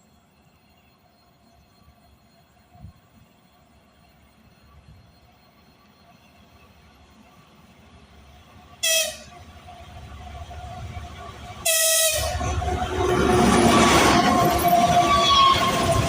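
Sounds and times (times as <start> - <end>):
diesel engine and rolling wheels: 0.0 - 16.0
locomotive horn blasts: 8.8 - 9.4, 11.6 - 12.5.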